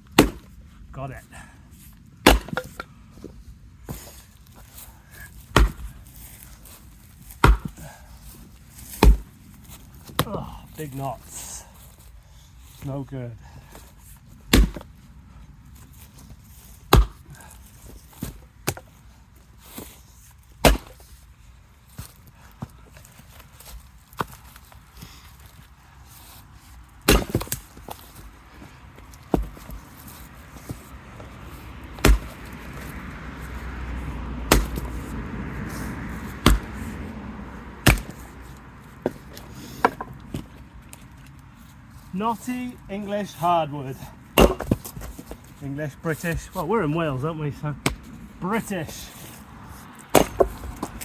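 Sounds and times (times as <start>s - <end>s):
axe striking firewood: 0.0s - 0.6s, 2.2s - 10.6s, 13.7s - 14.9s, 16.1s - 19.0s, 20.6s - 21.2s, 21.9s - 25.1s, 27.0s - 28.3s, 29.0s - 33.6s, 34.5s - 37.0s, 37.8s - 41.0s, 44.2s - 45.6s, 47.8s - 49.4s, 50.0s - 51.0s.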